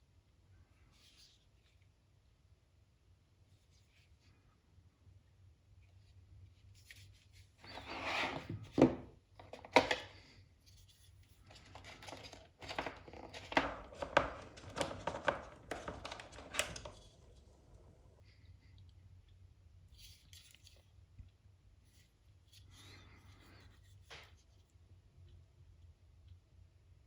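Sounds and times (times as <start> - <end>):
packaging rustling: 11.4 - 18.1.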